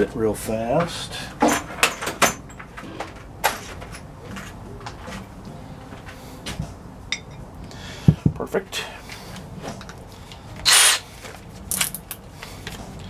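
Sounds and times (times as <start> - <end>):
tools clattering while rummaging: 0.8 - 5.4, 11.2 - 12.8.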